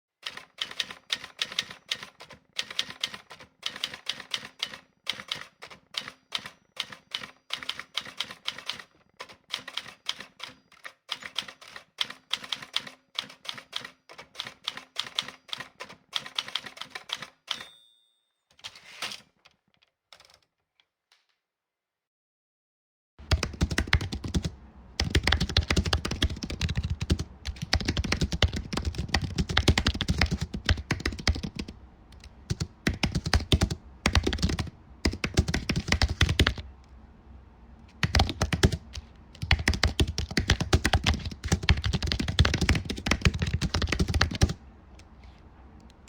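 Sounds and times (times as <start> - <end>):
short ringing tone: 17.6 - 18.5
keyboard typing clicks: 23.2 - 37.0, 37.9 - 45.1.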